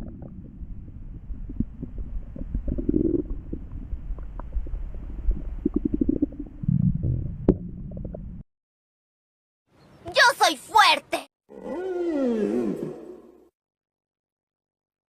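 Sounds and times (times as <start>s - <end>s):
stomach growling: 0.0s - 8.4s.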